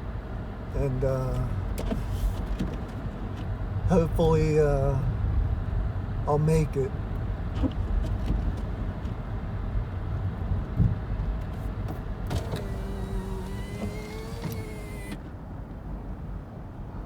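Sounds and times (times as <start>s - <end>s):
car rumbling through snow: 7.4s - 16.0s
steady whine: 12.4s - 15.3s.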